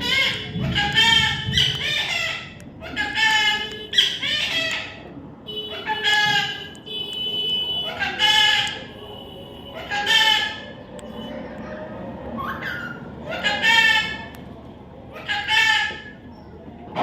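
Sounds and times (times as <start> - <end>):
baby parrot calling: 0.0 - 5.1, 5.7 - 6.7, 7.8 - 8.9, 9.8 - 10.7, 12.4 - 14.4, 15.1 - 16.3.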